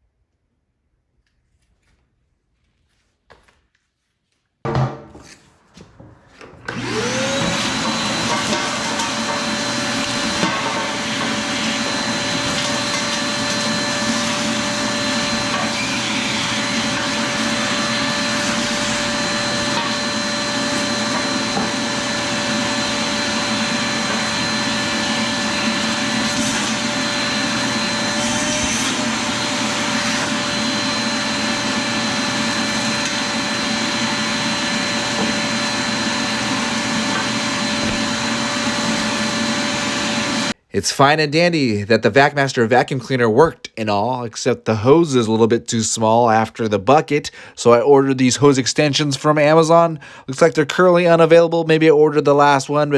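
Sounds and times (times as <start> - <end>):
shop vacuum motor whine: 5.8 - 40.6.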